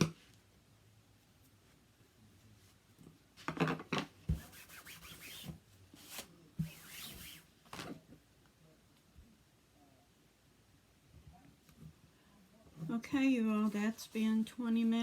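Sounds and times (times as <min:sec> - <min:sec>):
paper rustling: 0:04.3 - 0:07.9.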